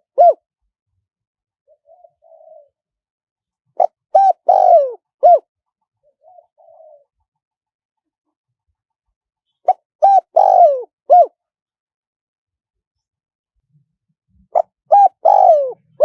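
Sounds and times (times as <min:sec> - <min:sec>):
dove cooing: 0:00.0 - 0:00.4, 0:01.6 - 0:02.8, 0:03.8 - 0:07.3, 0:09.6 - 0:11.4, 0:14.5 - 0:16.0.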